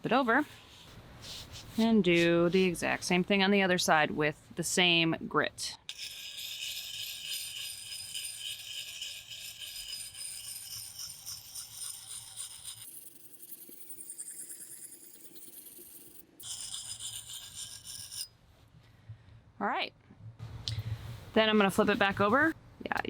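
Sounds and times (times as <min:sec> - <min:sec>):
sharpening stone scraping axe blade: 0:05.9 - 0:18.3.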